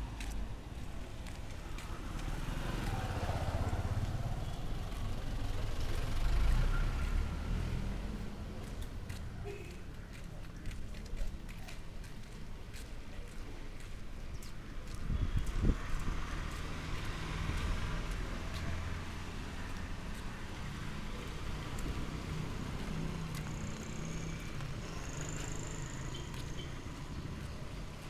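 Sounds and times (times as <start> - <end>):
street noise: 0.0 - 28.0
vehicle engine humming: 18.0 - 28.0.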